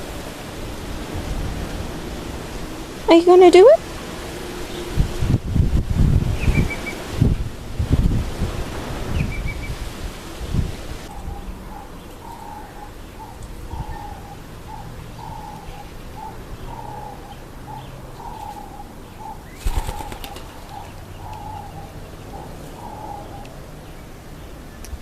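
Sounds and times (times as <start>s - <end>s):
dove calling short notes: 11.1s - 23.5s
wings flapping: 19.5s - 21.7s.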